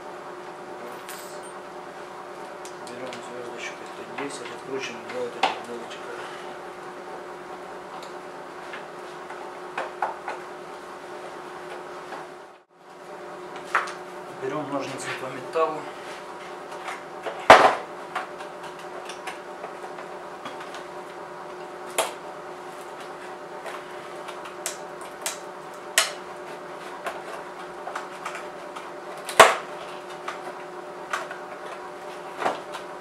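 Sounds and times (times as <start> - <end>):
steady hum: 0.0 - 33.0.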